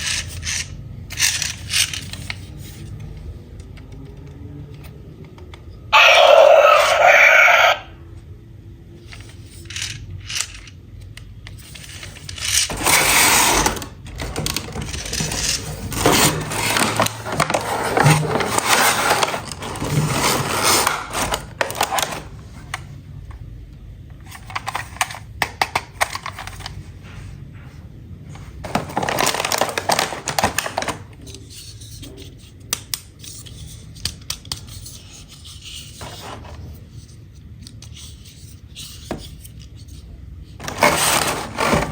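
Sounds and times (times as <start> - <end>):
plastic toy pieces clicking: 0.0 - 2.5
plastic packaging rustling: 11.9 - 22.3, 28.6 - 31.1, 40.6 - 41.9.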